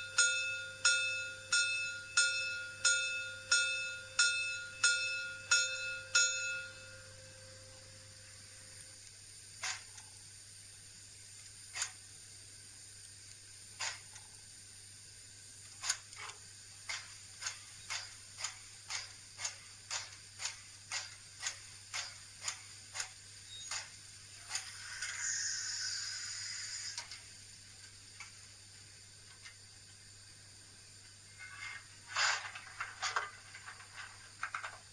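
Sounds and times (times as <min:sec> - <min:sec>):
model steam locomotive chuffs: 0:00.0 - 0:10.3, 0:11.7 - 0:12.9, 0:15.7 - 0:27.6, 0:31.2 - 0:34.9
faint steady hum: 0:00.0 - 0:34.9
steam hiss: 0:15.8 - 0:34.3.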